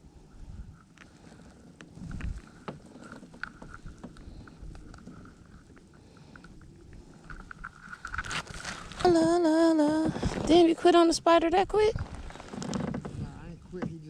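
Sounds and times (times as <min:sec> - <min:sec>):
wind on microphone: 0:00.0 - 0:14.0
gear clicks and knocks: 0:12.2 - 0:14.0.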